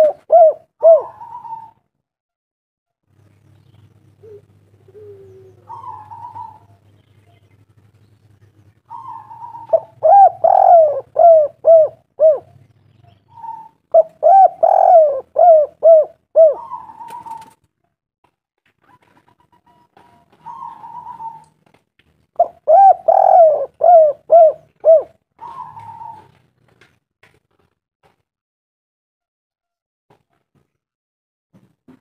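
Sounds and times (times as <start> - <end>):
dove cooing: 0.0 - 1.8, 4.2 - 6.8, 8.9 - 12.6, 13.3 - 17.6, 19.7 - 21.6, 22.4 - 26.4.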